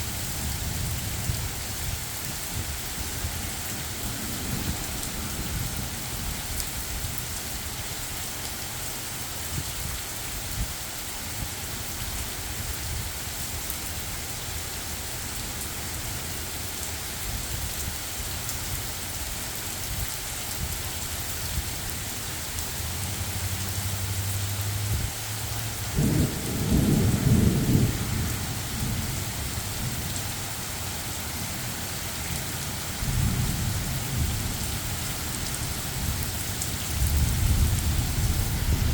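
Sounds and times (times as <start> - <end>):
heavy rain hissing: 0.0 - 38.9
thunder rumbling: 2.6 - 6.6, 25.8 - 30.2, 33.0 - 38.9.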